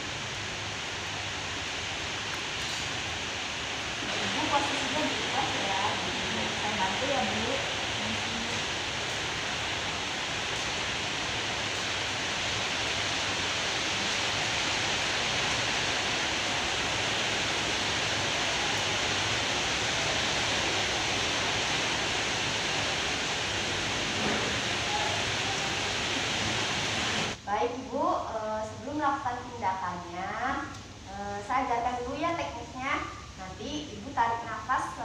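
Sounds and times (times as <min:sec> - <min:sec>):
steady background hiss: 0:00.0 - 0:35.0
faint voices: 0:24.2 - 0:26.6.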